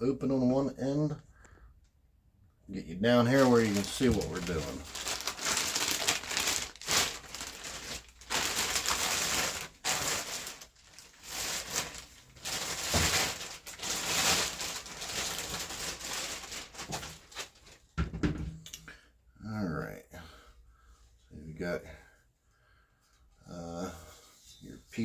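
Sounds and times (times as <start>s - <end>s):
packaging crinkling: 3.1s - 17.8s.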